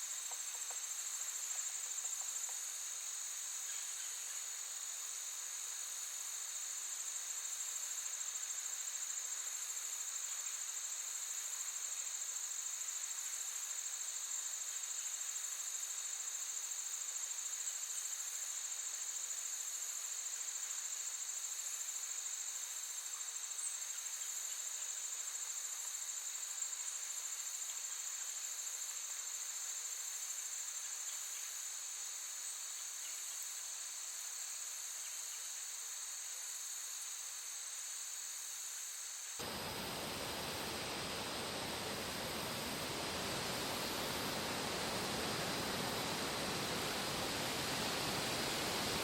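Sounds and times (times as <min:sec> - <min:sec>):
crickets trilling: 0:00.0 - 0:49.0
steady rushing noise: 0:39.4 - 0:49.0.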